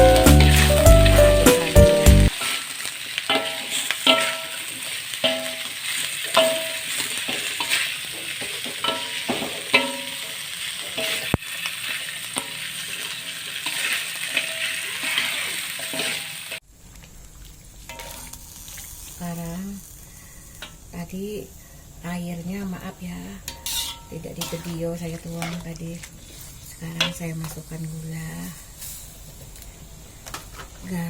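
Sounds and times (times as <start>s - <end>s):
music: 0.0s - 2.3s
paste sizzling in hot oil: 0.0s - 31.0s
spatula clinking and scraping pan: 2.3s - 16.6s, 17.9s - 19.1s, 23.4s - 30.8s.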